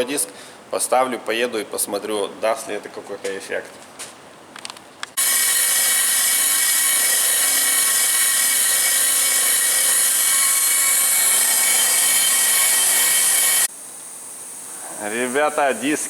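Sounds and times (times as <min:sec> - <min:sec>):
power tool whining: 0:05.2 - 0:13.7.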